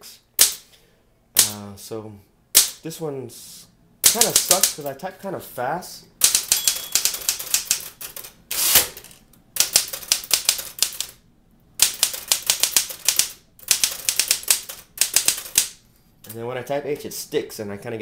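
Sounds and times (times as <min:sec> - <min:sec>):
manual typewriter key strikes: 0:04.0 - 0:04.8, 0:06.2 - 0:11.1, 0:11.8 - 0:15.7
typewriter rasp: 0:04.0 - 0:04.8, 0:06.2 - 0:11.2, 0:11.8 - 0:15.7.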